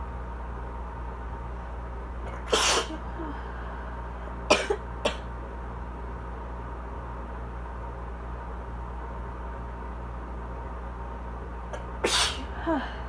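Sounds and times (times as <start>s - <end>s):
air conditioner humming: 0.0s - 13.0s
person coughing: 2.3s - 3.4s, 4.5s - 5.2s.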